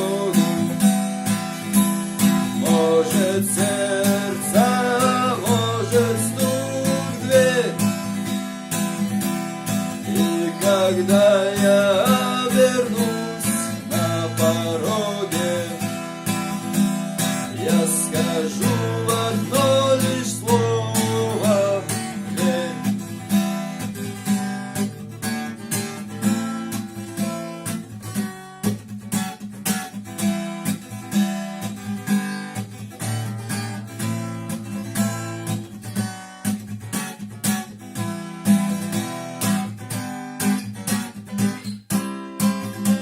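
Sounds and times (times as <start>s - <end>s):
person singing: 0.0s - 0.9s, 2.3s - 8.1s, 9.9s - 16.0s, 17.4s - 23.1s
acoustic guitar strumming: 0.0s - 43.0s.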